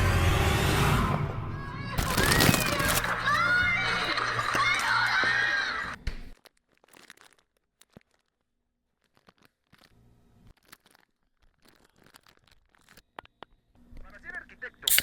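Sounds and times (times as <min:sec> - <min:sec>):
crinkling and rustling: 0:02.0 - 0:13.7.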